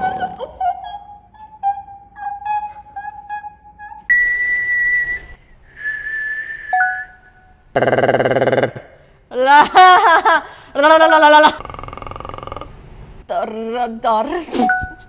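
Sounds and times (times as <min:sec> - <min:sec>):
person whistling: 0:02.5 - 0:07.5.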